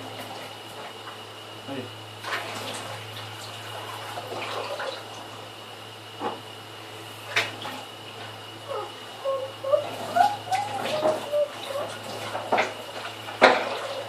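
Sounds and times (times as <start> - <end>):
water running in sink: 2.2 - 5.4, 9.7 - 14.0.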